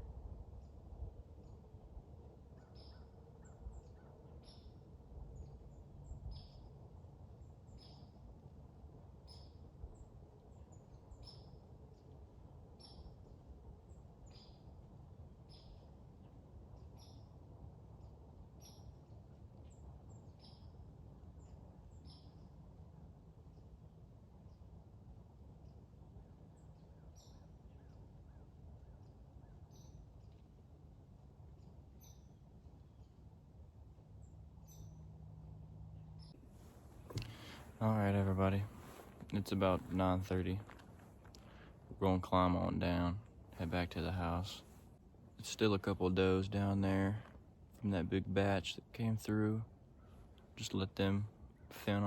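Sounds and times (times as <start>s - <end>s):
low wind rumble: 0.0s - 52.0s
small bird calling: 36.0s - 44.8s.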